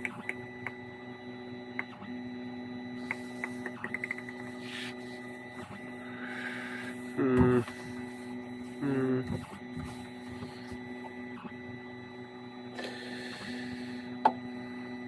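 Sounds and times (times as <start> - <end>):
low machine hum: 0.0 - 15.0.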